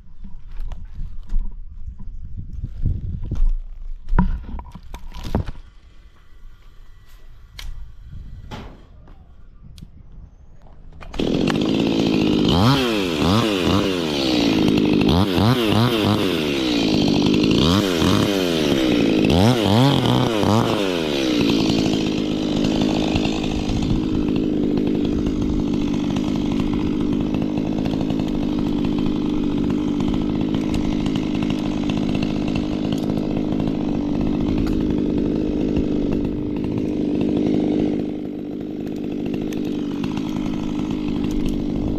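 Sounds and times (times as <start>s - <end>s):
chainsaw starting and revving: 11.0s - 41.9s.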